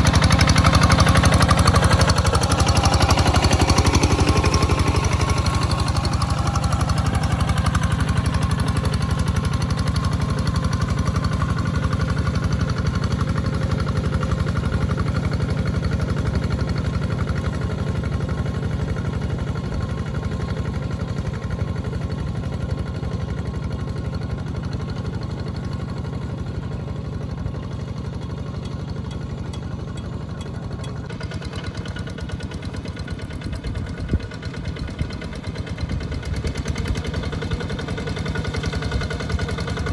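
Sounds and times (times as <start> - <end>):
tractor engine chugging: 0.0 - 39.9.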